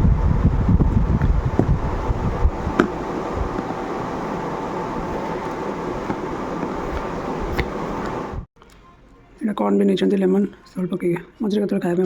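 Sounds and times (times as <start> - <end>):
wind rumbling on microphone: 0.0 - 8.5
fan-like whirring hum: 0.0 - 12.0.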